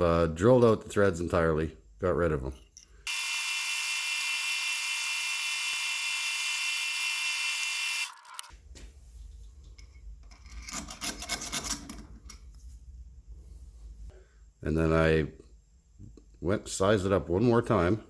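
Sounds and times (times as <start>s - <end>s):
electric drill whining: 3.1s - 8.5s.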